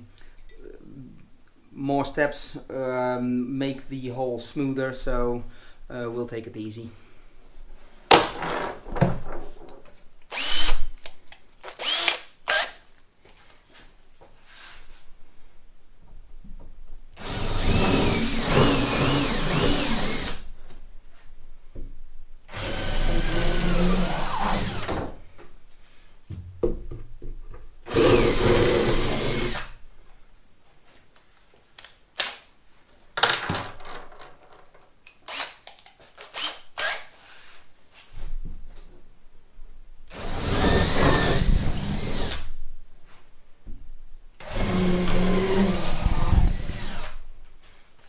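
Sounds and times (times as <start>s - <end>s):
power drill boring through wood: 10.3s - 10.8s, 11.8s - 12.7s, 17.2s - 20.5s, 22.5s - 25.0s, 27.9s - 29.8s, 40.1s - 42.4s, 44.4s - 47.2s.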